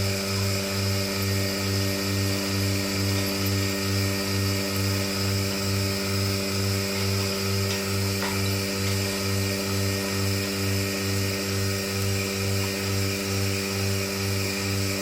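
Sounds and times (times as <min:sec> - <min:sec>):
milking machine throbbing hum: 0:00.0 - 0:15.0.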